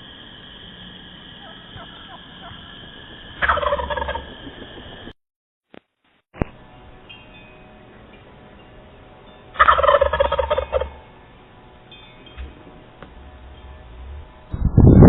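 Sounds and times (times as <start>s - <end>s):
turkey gobbling: 1.4s - 5.1s, 9.6s - 11.0s.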